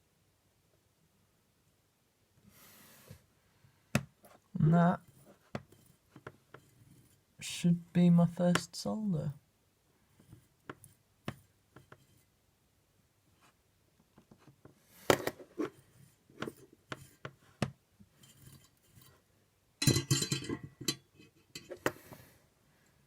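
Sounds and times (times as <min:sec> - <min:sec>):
tools and wires clattering on desk: 0:15.1 - 0:17.4, 0:18.2 - 0:19.2, 0:19.8 - 0:22.1.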